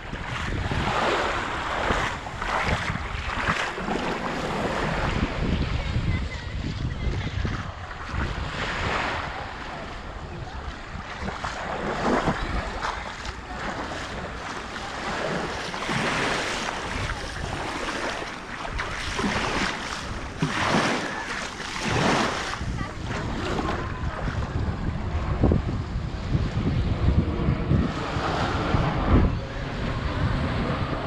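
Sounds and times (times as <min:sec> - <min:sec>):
sea waves washing onto shore: 0:00.0 - 0:26.6
wind rumbling on microphone: 0:00.0 - 0:31.0.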